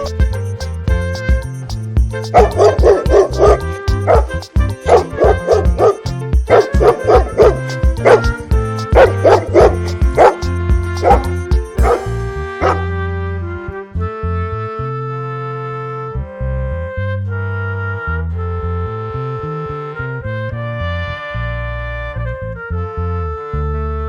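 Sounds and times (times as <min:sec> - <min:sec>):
background music: 0:00.0 - 0:24.0
dog barking: 0:02.3 - 0:04.3, 0:04.9 - 0:08.4, 0:09.0 - 0:12.9.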